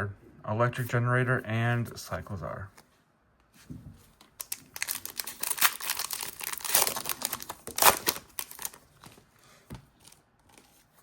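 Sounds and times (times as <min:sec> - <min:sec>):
foil wrapper ripping: 0:04.4 - 0:08.8
foil wrapper crinkling: 0:04.4 - 0:08.9.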